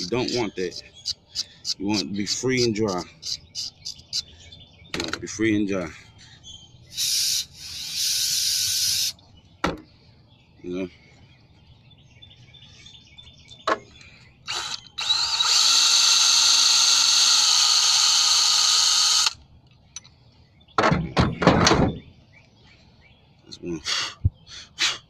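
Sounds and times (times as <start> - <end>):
short loud rasps: 6.9 - 9.1
power tool running: 14.5 - 19.4.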